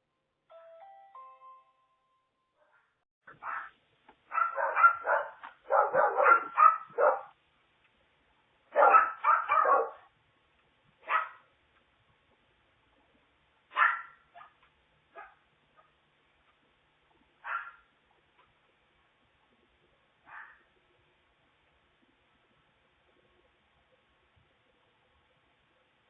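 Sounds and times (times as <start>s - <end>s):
dog barking: 3.4s - 7.4s, 8.7s - 10.1s, 11.0s - 11.5s, 13.7s - 15.9s, 17.4s - 17.9s, 20.2s - 20.6s.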